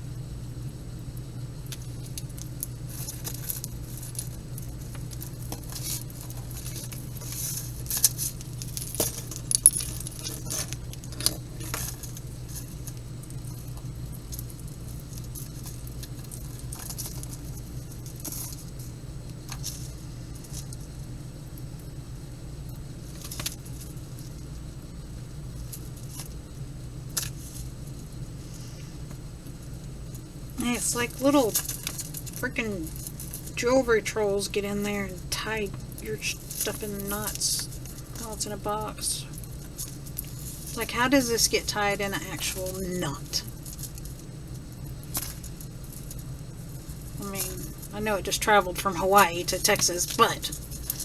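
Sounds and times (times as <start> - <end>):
steady low hum: 0.0 - 51.0
metal chains clinking: 8.6 - 10.8.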